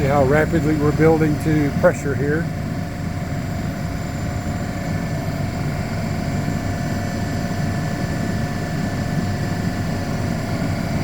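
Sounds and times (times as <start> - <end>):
compressor running: 0.0 - 11.0.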